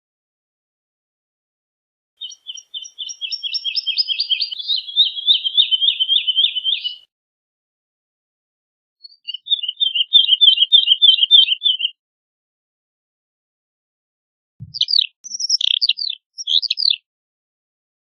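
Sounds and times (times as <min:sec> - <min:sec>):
woodlark singing: 0:02.2 - 0:07.1, 0:09.0 - 0:12.0, 0:14.6 - 0:17.0.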